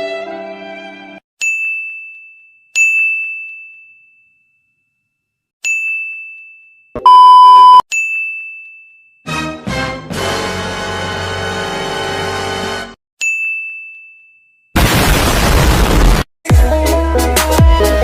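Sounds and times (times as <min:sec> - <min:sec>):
loud steady beep: 0:07.0 - 0:07.8
crackly burst of noise: 0:14.8 - 0:16.3.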